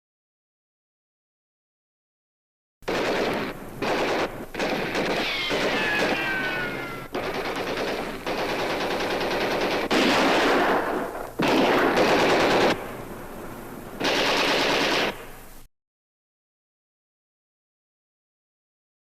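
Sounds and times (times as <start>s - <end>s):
machine-gun fire: 2.8s - 13.1s, 14.0s - 15.4s
falling whine: 5.1s - 7.6s.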